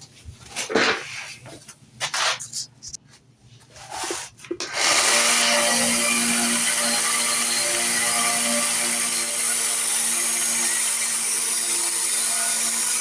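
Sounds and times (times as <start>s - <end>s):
rubbing and handling sounds: 0.0s - 4.8s.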